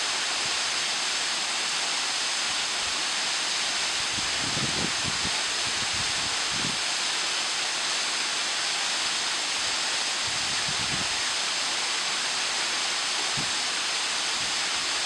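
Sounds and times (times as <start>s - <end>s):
waterfall rushing into pool: 0.0s - 15.0s.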